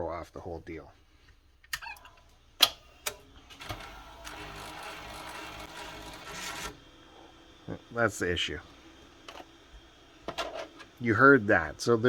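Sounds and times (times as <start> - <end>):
tape mechanism churning: 3.0 - 6.8.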